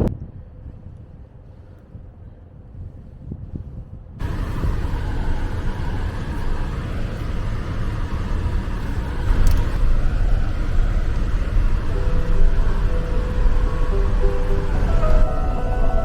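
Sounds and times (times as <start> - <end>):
car engine and road noise: 4.2 - 16.0.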